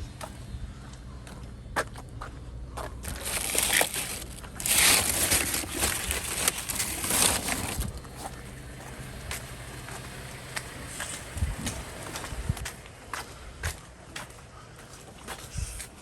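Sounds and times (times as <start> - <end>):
plastic wrap crinkling: 3.0 - 8.1.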